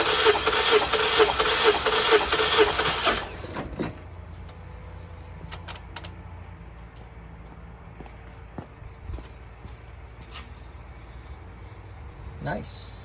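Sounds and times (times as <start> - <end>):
engine starter cranking: 0.0 - 4.0.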